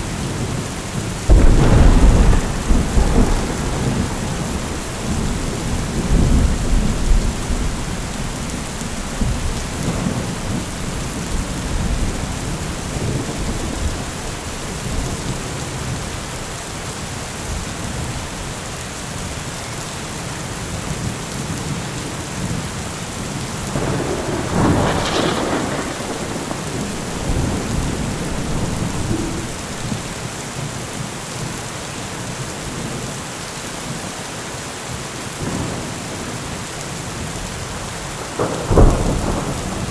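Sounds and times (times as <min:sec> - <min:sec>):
thunder rumbling: 0:00.0 - 0:16.5, 0:23.6 - 0:30.4, 0:38.1 - 0:39.9
heavy rain: 0:00.0 - 0:39.9.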